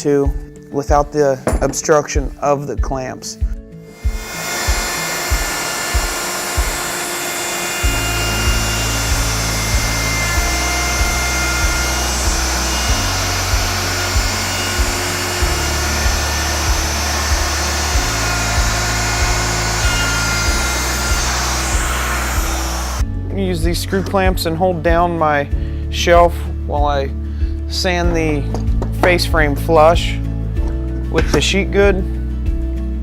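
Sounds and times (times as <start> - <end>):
router whining: 3.9 - 23.0
background music with beat: 7.8 - 33.0.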